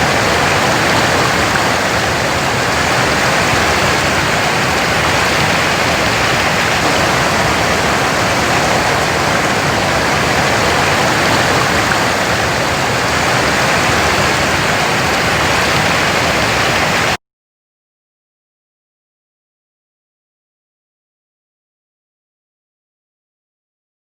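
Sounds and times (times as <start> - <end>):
waterfall pouring: 0.0 - 17.2.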